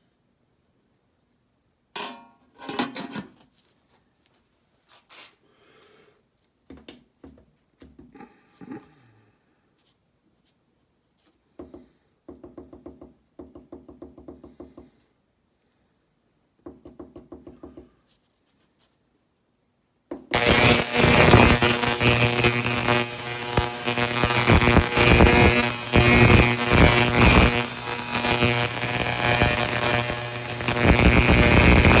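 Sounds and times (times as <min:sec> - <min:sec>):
faint rapid pulsing: 0:20.4 - 0:32.0
ultrasonic cleaner buzzing: 0:20.4 - 0:32.0.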